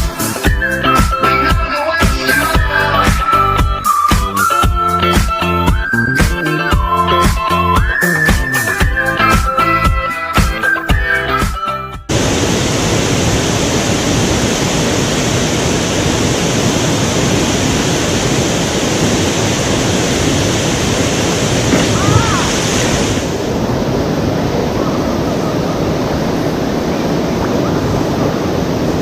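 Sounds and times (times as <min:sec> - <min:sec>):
waterfall roaring: 0:12.1 - 0:29.0.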